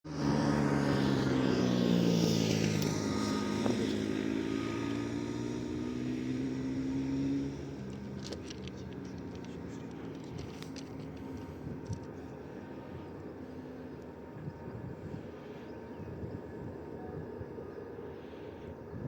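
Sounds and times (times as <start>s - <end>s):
vehicle engine running: 0.1s - 15.2s.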